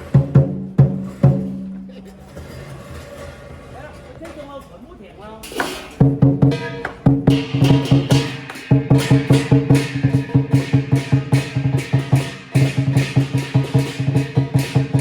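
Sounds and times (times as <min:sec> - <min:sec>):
large drum beaten fast: 0:00.0 - 0:01.9, 0:06.0 - 0:15.0
cymbals ringing: 0:05.4 - 0:15.0.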